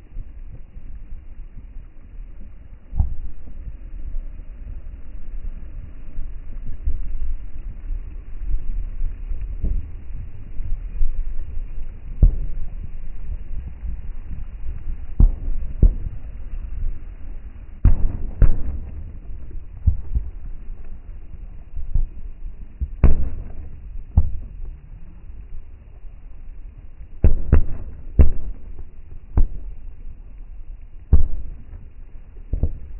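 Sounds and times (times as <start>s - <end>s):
steady low rumble: 0.0s - 32.9s
fireworks bangs: 15.0s - 17.0s, 17.8s - 22.2s, 22.8s - 25.1s, 27.2s - 30.0s, 31.1s - 32.9s.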